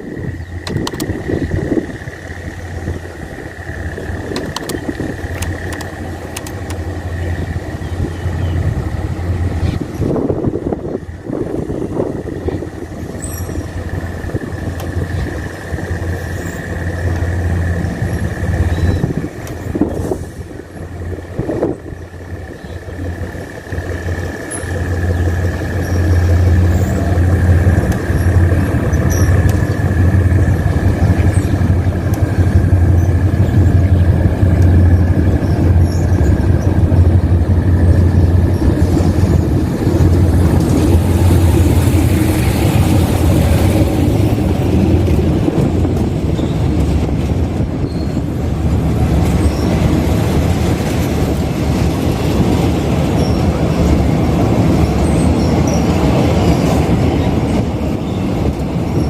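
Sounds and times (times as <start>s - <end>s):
high whine: 0.0s - 58.6s
locomotive engine drone: 0.0s - 59.0s
rushing rail noise: 0.0s - 59.0s.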